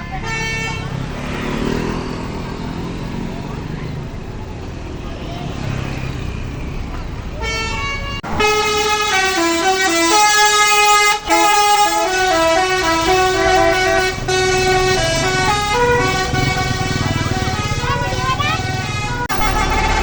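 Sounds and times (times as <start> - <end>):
bus horn playing a tune: 0.0 - 1.1, 7.3 - 20.0.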